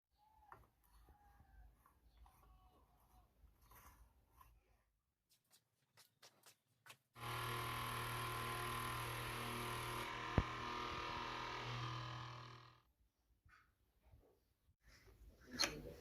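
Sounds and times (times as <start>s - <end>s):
small motor humming and whirring: 7.2s - 12.8s.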